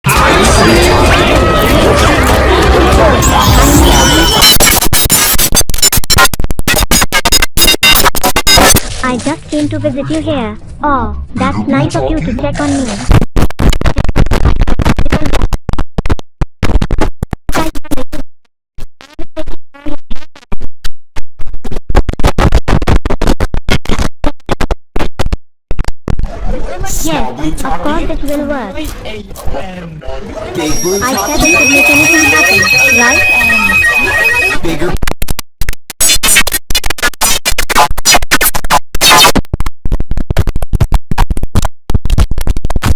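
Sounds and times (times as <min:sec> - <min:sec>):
stuttering edited audio slices: 0:00.1 - 0:08.8, 0:30.6 - 0:35.0, 0:36.0 - 0:39.4.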